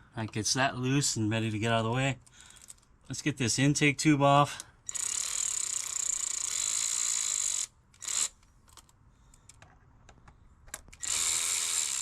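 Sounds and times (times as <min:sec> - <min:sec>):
socket ratchet clicking: 0:04.9 - 0:09.6, 0:10.8 - 0:12.0.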